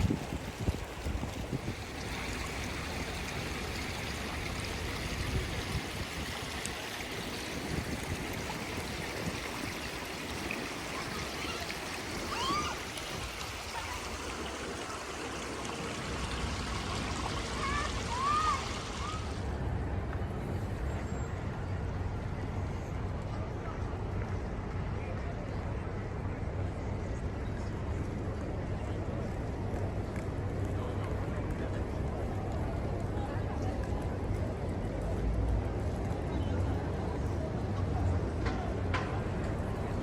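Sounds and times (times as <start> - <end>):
rushing running water: 0.0 - 19.8.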